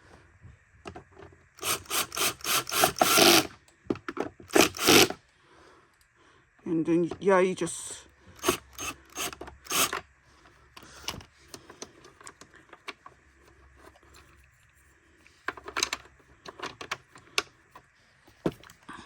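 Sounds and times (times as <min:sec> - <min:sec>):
plastic parts clicking: 0:15.4 - 0:17.5.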